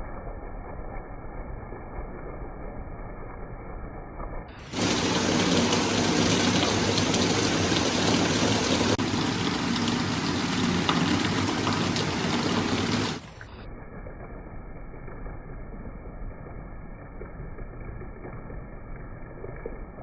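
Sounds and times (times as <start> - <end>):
heavy rain falling: 4.6 - 13.4.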